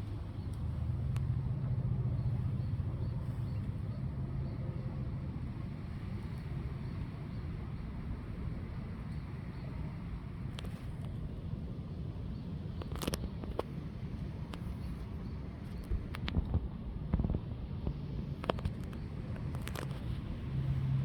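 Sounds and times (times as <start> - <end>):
vehicle engine hum passing by: 0.0 - 11.2, 17.7 - 21.0.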